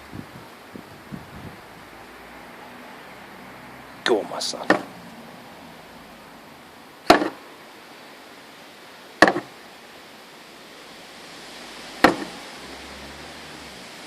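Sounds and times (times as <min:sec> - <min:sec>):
tortoise shell knocking on metal: 0:04.6 - 0:04.9, 0:07.1 - 0:07.4, 0:09.2 - 0:09.5, 0:12.0 - 0:12.3.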